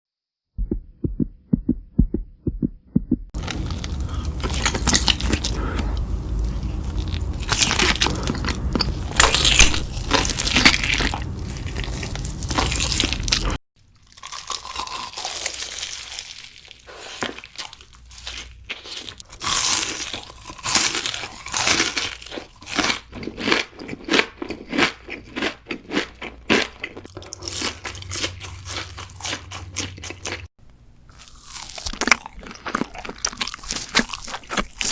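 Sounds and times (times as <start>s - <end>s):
low thumps: 0.6s - 3.5s
crunchy food chewing: 3.4s - 30.5s, 31.1s - 34.9s.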